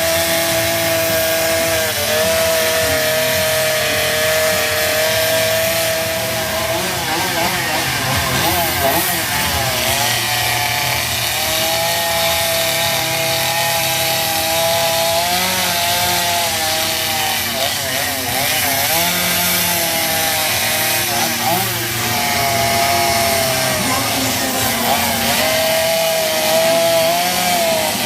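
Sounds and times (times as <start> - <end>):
chainsaw cutting wood: 0.0 - 28.0.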